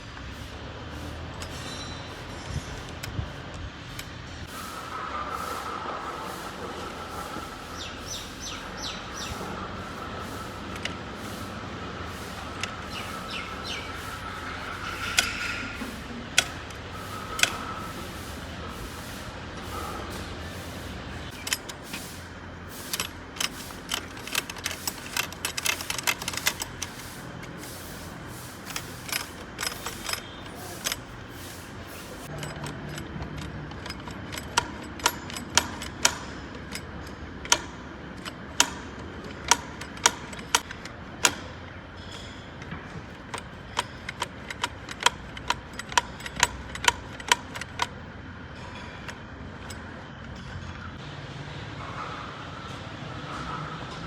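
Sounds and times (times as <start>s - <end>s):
sharp metallic clicks and taps: 6.2s - 18.0s, 21.3s - 22.1s, 22.8s - 31.6s, 32.2s - 50.5s.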